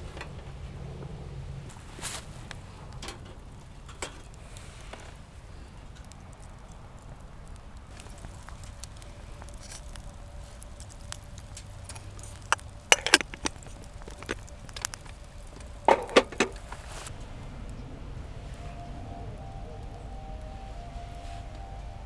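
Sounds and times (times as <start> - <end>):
low steady rumble: 7.1 - 22.0
sharp clicks and knocks: 11.6 - 16.9.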